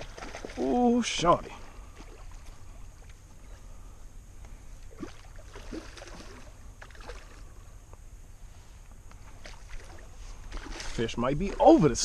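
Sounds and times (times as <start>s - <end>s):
water splashing around kayak: 0.0s - 3.6s, 9.2s - 12.0s
steady low rumble: 1.2s - 12.0s.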